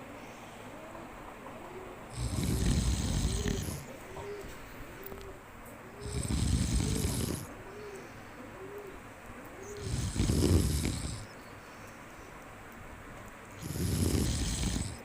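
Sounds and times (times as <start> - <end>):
monkey snoring: 2.1 - 7.9, 9.6 - 11.3, 13.5 - 15.0.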